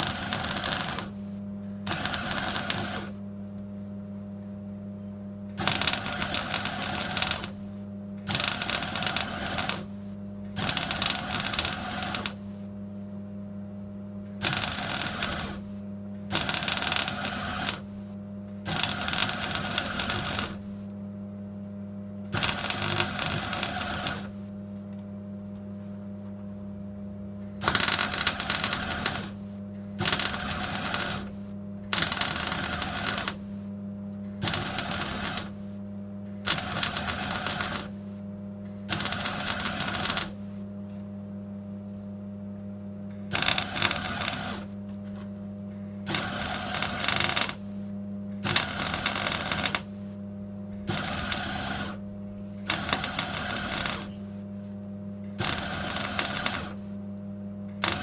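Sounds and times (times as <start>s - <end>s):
welder crackling: 0.0s - 1.3s, 1.9s - 3.2s, 5.6s - 12.6s, 14.4s - 18.1s, 18.7s - 20.8s, 22.4s - 24.6s, 27.6s - 33.6s, 34.4s - 35.7s, 36.5s - 38.2s, 38.9s - 40.6s, 43.3s - 44.7s, 46.1s - 50.1s, 50.8s - 54.4s, 55.4s - 56.9s
low electrical hum: 0.0s - 58.0s.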